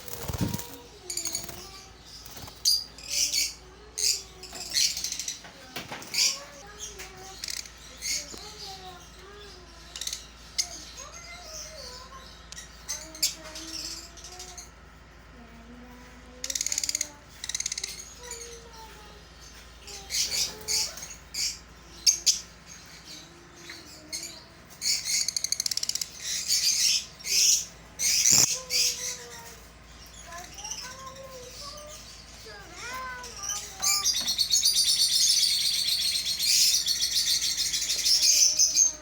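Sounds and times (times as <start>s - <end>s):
parrots calling loudly: 19.9s - 29.6s.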